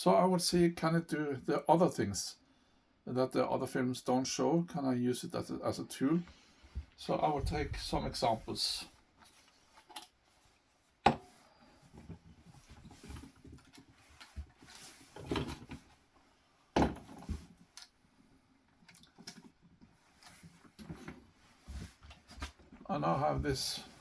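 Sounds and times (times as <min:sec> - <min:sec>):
rustling and light clatter: 0:06.3 - 0:17.8, 0:18.8 - 0:24.0.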